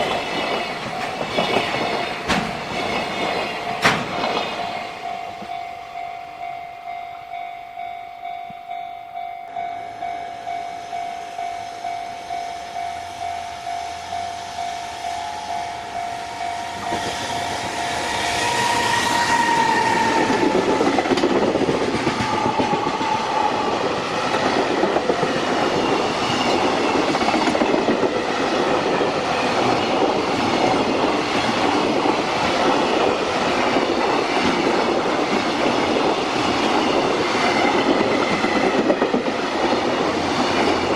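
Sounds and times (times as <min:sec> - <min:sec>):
train wheels clattering: 0:00.0 - 0:05.6, 0:14.9 - 0:40.9
level-crossing bell ringing: 0:04.6 - 0:18.7.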